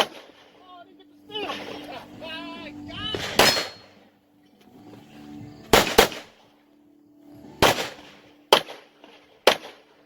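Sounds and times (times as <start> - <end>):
pistol shots: 0.0 - 0.6, 3.1 - 4.0, 5.7 - 6.4, 7.6 - 10.0.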